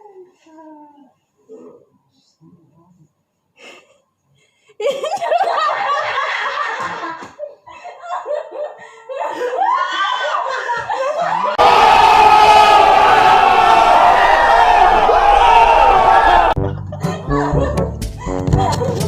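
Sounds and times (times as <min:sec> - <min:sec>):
people laughing: 0:04.8 - 0:11.6, 0:14.2 - 0:19.0.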